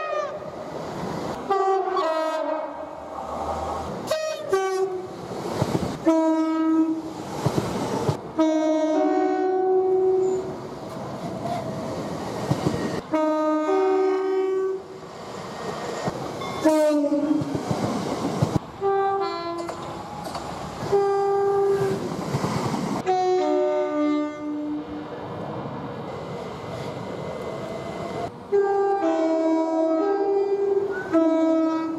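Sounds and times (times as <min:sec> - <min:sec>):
two-tone train horns: 0:00.0 - 0:00.6, 0:01.4 - 0:03.1, 0:04.0 - 0:05.2, 0:06.0 - 0:07.1, 0:08.3 - 0:10.6, 0:13.0 - 0:14.9, 0:16.5 - 0:17.6, 0:18.8 - 0:19.9, 0:20.8 - 0:22.0, 0:23.0 - 0:25.2, 0:28.5 - 0:31.9
trains rumbling and clattering past: 0:00.0 - 0:31.9.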